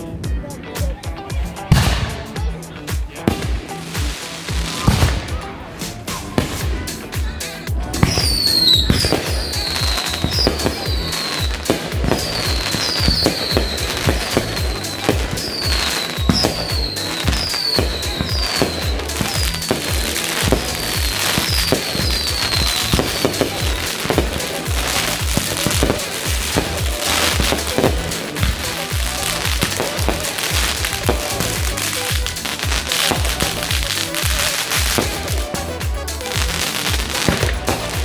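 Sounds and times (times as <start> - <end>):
fireworks pops and crackles: 1.7 - 38.0
falling firework whistles: 8.0 - 38.0.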